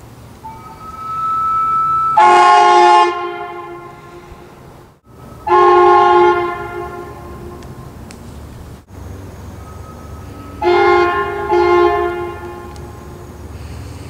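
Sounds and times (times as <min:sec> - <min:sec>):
thin steady tone: 0:00.0 - 0:14.0
chord-like air horn blasts: 0:00.4 - 0:08.0, 0:09.2 - 0:13.8.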